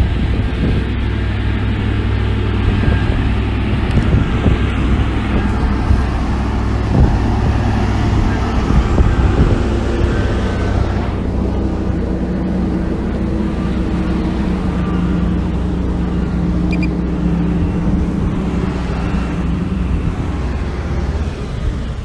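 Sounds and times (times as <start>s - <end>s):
heavy diesel engine rumbling: 0.0s - 22.0s.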